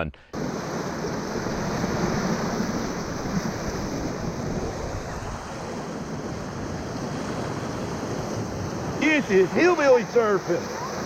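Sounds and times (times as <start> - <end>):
wind noise on microphone: 0.4 - 9.0
whitewater rapids rushing: 8.5 - 11.0.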